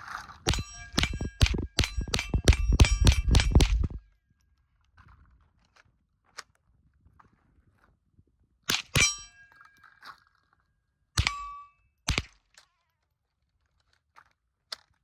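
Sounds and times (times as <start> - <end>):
sharp metallic clanks: 0.5 - 4.0, 8.7 - 9.5, 11.2 - 12.3.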